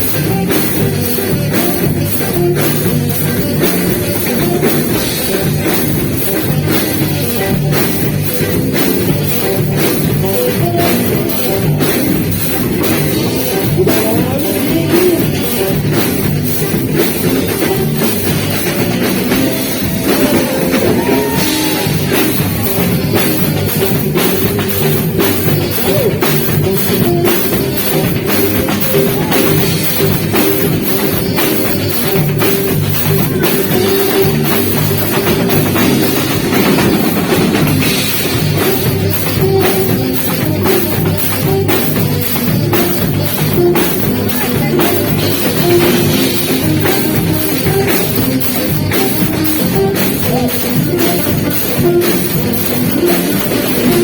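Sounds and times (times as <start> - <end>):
drum kit beat: 0.0 - 54.0
live dance band playing: 0.0 - 54.0
saxophone melody: 0.0 - 54.0.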